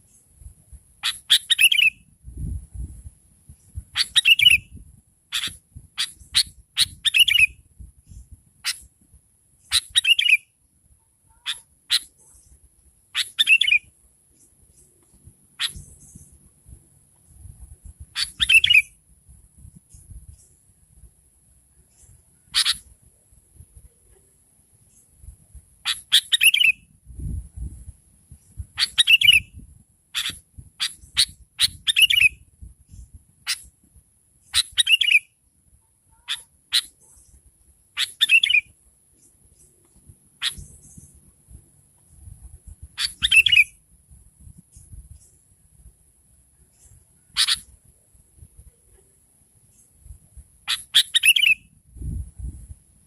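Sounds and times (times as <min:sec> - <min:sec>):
steady high-pitched hiss: 0:00.0 - 0:53.0
bulbul chattering calls: 0:01.0 - 0:02.0, 0:04.0 - 0:04.6, 0:05.3 - 0:07.5, 0:09.6 - 0:10.4, 0:11.3 - 0:12.6, 0:13.2 - 0:13.9, 0:15.6 - 0:16.3, 0:18.2 - 0:18.9, 0:22.0 - 0:22.9, 0:25.8 - 0:26.8, 0:28.8 - 0:29.5, 0:30.2 - 0:32.4, 0:34.5 - 0:35.3, 0:36.1 - 0:37.4, 0:38.0 - 0:38.7, 0:40.4 - 0:41.1, 0:43.0 - 0:43.8, 0:46.7 - 0:47.7, 0:50.7 - 0:51.7.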